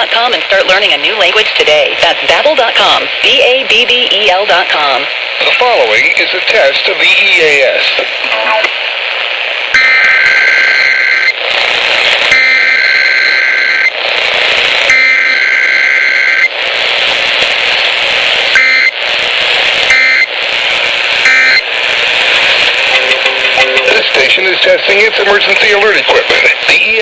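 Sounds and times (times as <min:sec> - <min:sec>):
radio hiss: 0:00.0 - 0:27.0
buzzing digital data bursts: 0:18.6 - 0:19.0, 0:19.9 - 0:20.3, 0:21.2 - 0:21.6.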